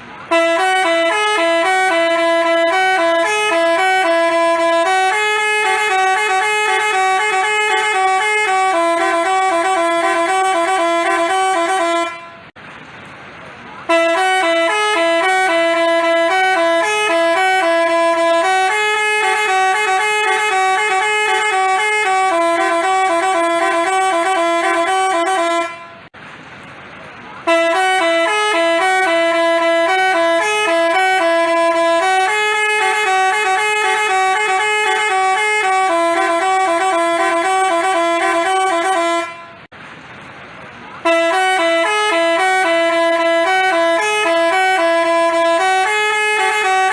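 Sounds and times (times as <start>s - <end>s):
bus horn playing tune: 0.0s - 12.6s, 13.8s - 26.1s, 27.4s - 39.7s, 41.0s - 46.9s.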